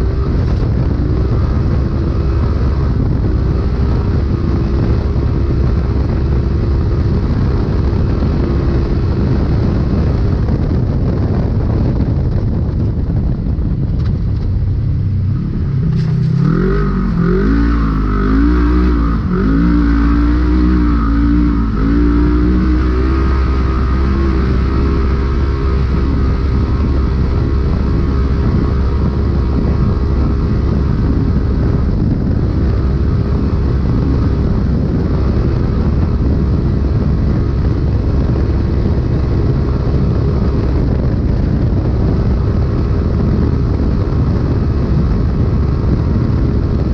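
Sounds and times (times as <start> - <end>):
engine revving from inside cab: 15.2 - 37.8.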